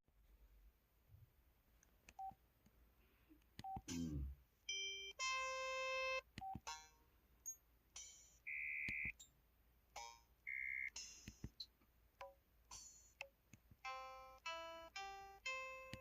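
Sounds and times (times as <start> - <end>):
phone keypad beeps and chimes: 4.7 - 6.9, 8.5 - 9.3.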